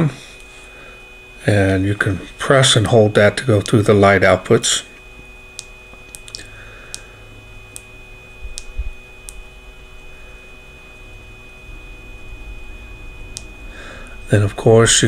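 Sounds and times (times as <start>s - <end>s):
flashlight light ticks: 8.5s - 9.4s.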